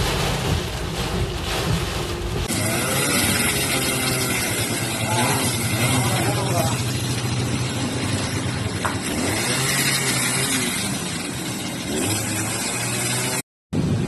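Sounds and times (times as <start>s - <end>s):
rain and wind hissing: 0.0s - 14.0s
vehicle engine humming low: 4.5s - 11.8s.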